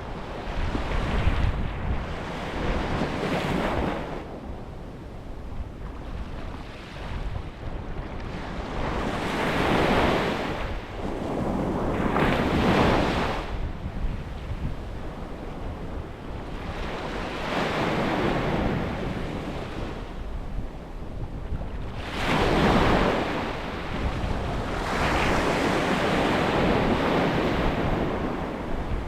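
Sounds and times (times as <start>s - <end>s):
sea waves breaking on a beach: 0.0s - 29.0s
wind rumble on microphone: 0.0s - 29.0s.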